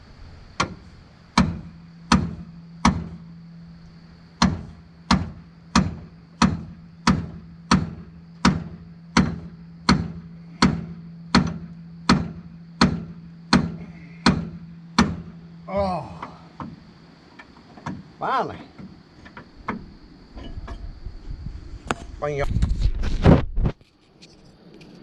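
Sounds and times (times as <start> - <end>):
hammer striking metal: 1.4 - 3.2, 4.4 - 15.3.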